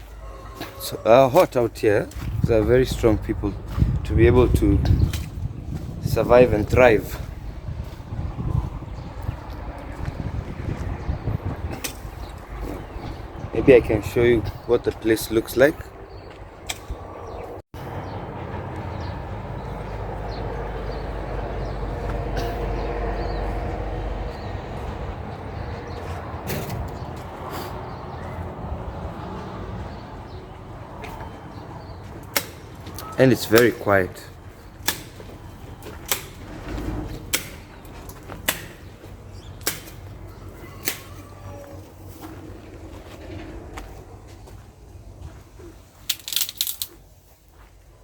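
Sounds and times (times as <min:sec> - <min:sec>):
low rumble: 0:02.0 - 0:14.6.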